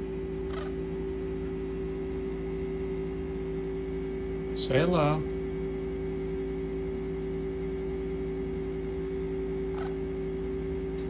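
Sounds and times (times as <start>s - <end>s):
electrical hum: 0.0s - 11.0s.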